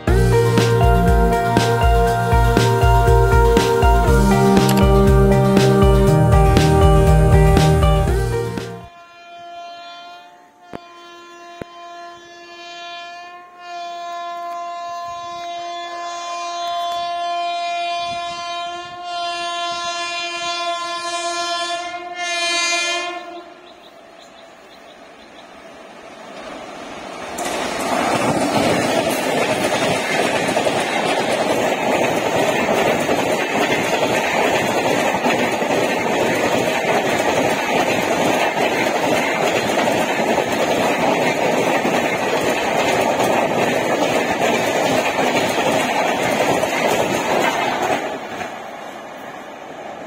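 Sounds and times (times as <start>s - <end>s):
express train passing at speed: 0.0s - 9.0s, 10.3s - 50.0s
wheels clicking on rail: 26.3s - 50.0s.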